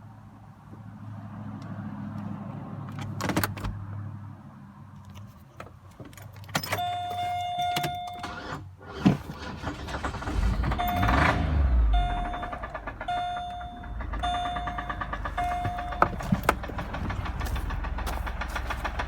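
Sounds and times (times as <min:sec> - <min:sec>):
car engine idling: 0:09.4 - 0:19.0
clicks and clunks: 0:12.6 - 0:19.0.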